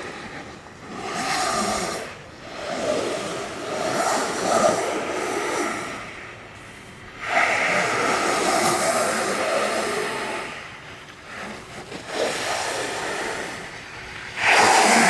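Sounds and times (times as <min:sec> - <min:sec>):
snowboard sliding on snow: 0:00.0 - 0:15.0
wind on microphone: 0:00.0 - 0:15.0.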